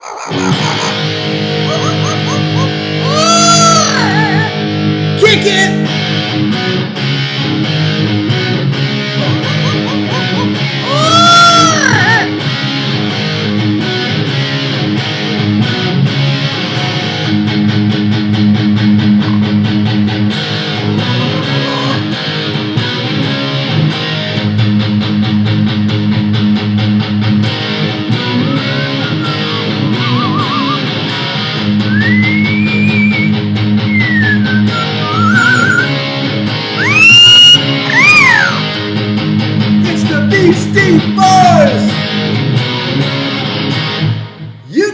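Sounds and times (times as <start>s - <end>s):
parrot whistling: 0.0s - 4.4s, 19.2s - 19.6s, 20.9s - 22.1s, 28.1s - 36.0s, 36.8s - 38.8s
distorted electric guitar riff: 0.0s - 44.9s
rock music: 0.3s - 44.9s.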